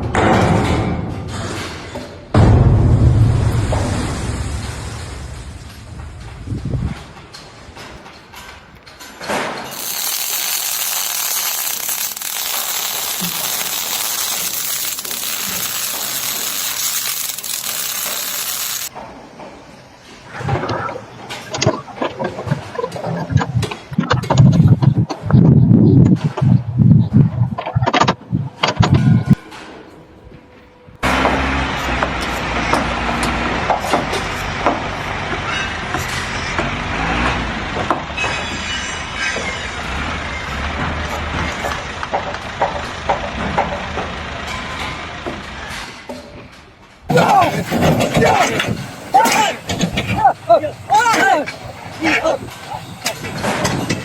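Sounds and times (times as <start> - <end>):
loud steady hiss: 9.7 - 18.9, 47.2 - 54.0
heavy machine engine running: 31.0 - 38.2, 39.7 - 45.9.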